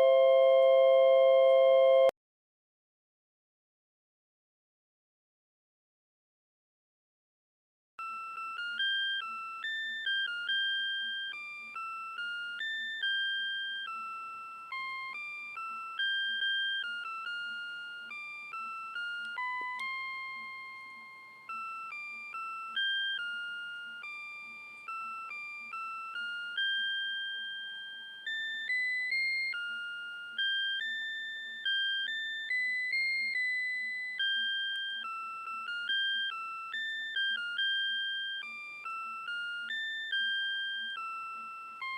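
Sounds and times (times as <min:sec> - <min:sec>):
electronic chime melody: 0:00.0 - 0:02.1.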